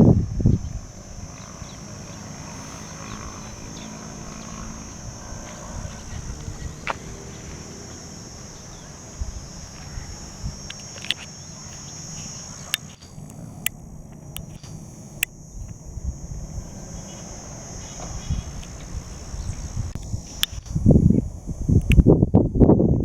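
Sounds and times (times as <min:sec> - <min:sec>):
insects droning: 0:00.0 - 0:23.0
low rumble: 0:00.0 - 0:23.0
sharp clicks: 0:00.7 - 0:22.2.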